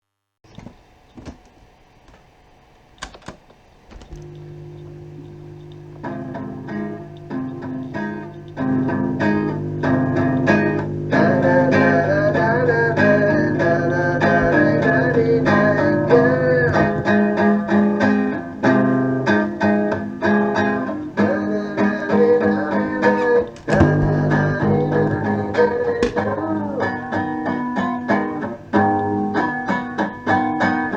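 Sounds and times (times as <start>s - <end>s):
strummed and plucked guitar: 4.0s - 30.9s
person singing: 4.3s - 18.3s, 20.6s - 27.2s.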